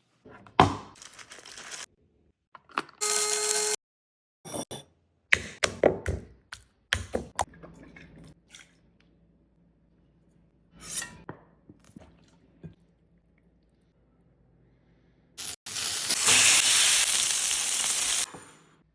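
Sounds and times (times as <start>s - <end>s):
food sizzling in hot pan: 15.4s - 18.3s.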